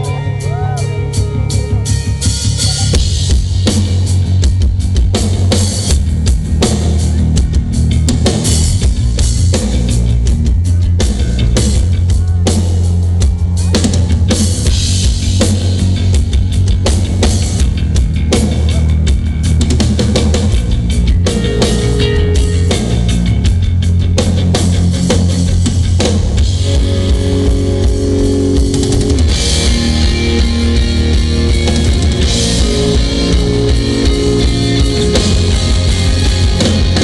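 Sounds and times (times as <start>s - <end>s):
electric guitars: 0.0s - 37.0s
heavy bass: 0.0s - 37.0s
drum kit hits: 13.4s - 37.0s.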